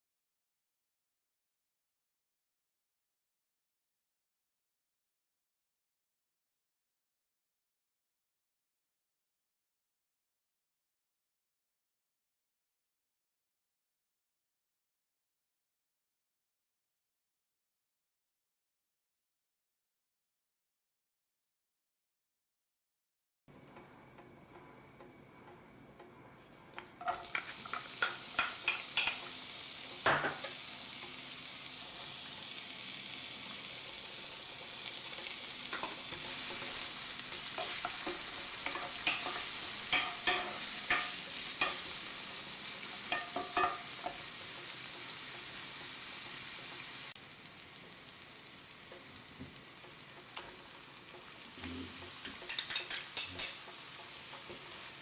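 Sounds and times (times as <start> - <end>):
vegetables sizzling in oil: 27.0 - 55.0.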